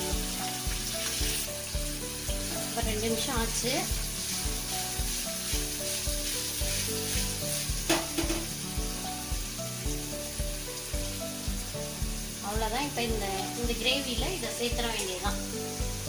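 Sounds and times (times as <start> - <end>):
background music with beat: 0.0 - 3.0, 3.9 - 12.4
cheese sizzling in oil: 0.0 - 16.0.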